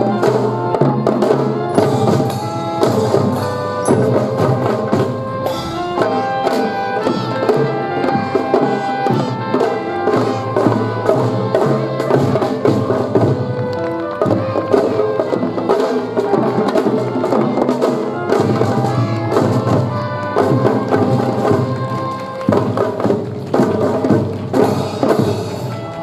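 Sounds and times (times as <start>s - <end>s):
fife melodic notes: 0.0s - 16.1s
drum strokes in steady beat: 0.0s - 26.0s.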